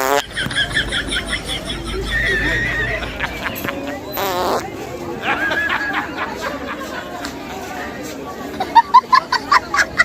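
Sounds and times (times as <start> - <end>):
fart sound effect: 0.0 - 0.3, 4.2 - 4.7.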